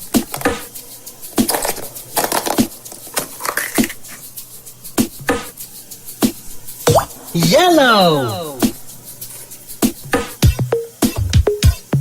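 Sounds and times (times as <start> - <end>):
plastic and foil crinkling and clicking: 0.0 - 4.5.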